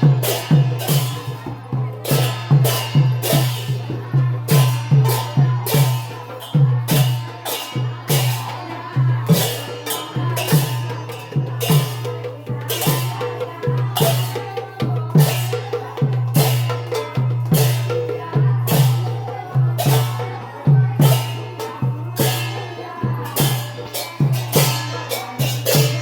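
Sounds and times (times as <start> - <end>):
bright cymbal clash: 0.0 - 14.5, 19.8 - 26.0.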